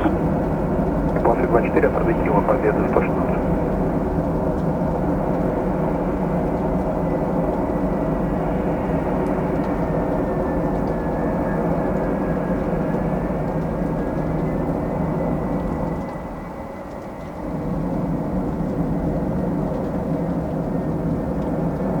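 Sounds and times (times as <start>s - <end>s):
jet engines running: 0.0s - 4.5s.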